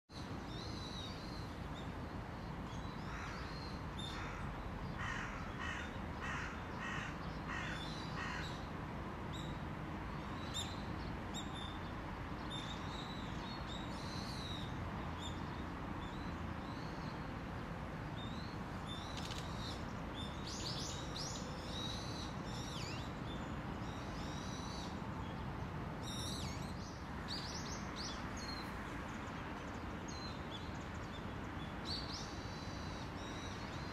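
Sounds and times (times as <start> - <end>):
crow cawing: 5.0 - 8.5
small birds chirping: 18.2 - 33.9.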